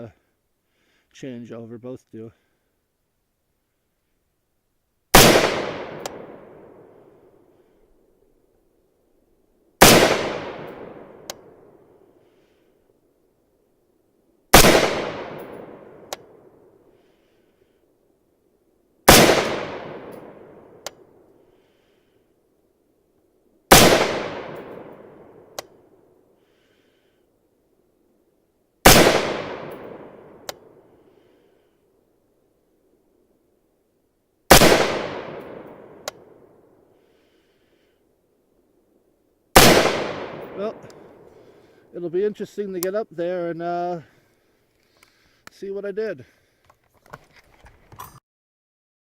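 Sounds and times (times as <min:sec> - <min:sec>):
rifle shots echoing: 0:05.1 - 0:07.2, 0:09.8 - 0:11.9, 0:14.5 - 0:16.8, 0:19.1 - 0:21.2, 0:23.7 - 0:26.0, 0:28.8 - 0:31.1, 0:34.5 - 0:36.6, 0:39.6 - 0:41.7.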